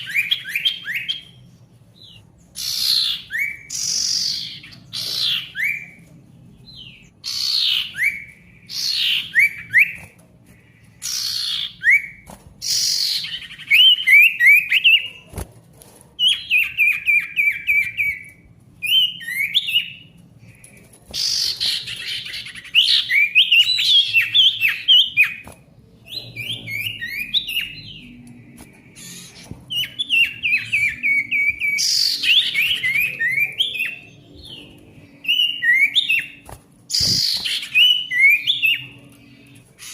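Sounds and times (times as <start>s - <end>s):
bird singing whistles and chirps: 16.2s - 20.0s, 28.9s - 39.0s.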